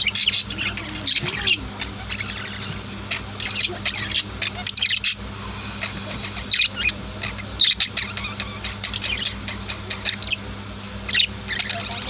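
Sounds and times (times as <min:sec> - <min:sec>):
birds chirping: 0:00.0 - 0:12.0
faint low hum: 0:00.0 - 0:12.0.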